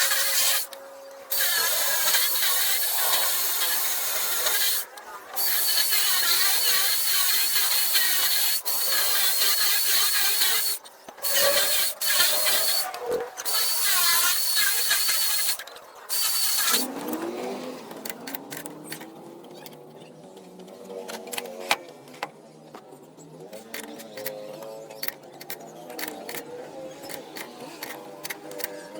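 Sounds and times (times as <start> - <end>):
metal grinding with high whine: 0.0 - 19.1.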